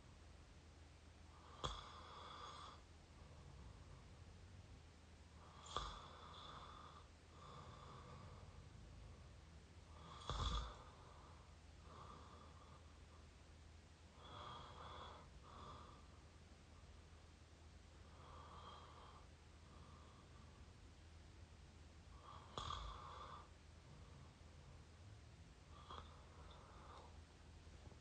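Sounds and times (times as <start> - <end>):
person snoring: 5.4 - 8.5, 9.9 - 11.4, 22.2 - 23.5.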